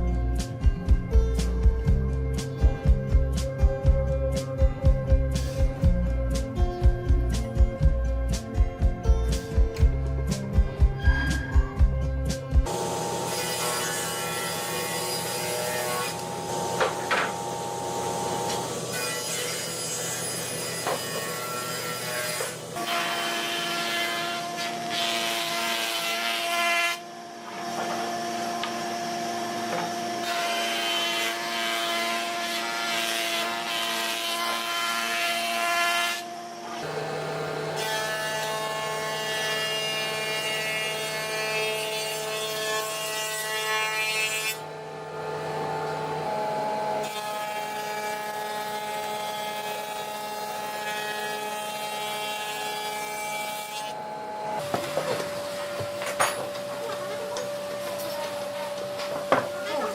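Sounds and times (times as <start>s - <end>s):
power tool cutting wood: 12.6s - 59.9s.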